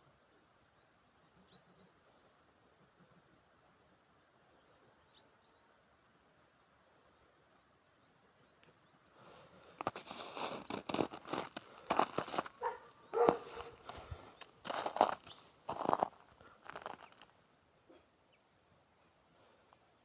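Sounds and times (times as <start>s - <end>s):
faint bird chirps: 0.2s - 3.4s, 4.2s - 5.9s, 15.2s - 15.6s
crunching and rustling: 9.6s - 17.3s.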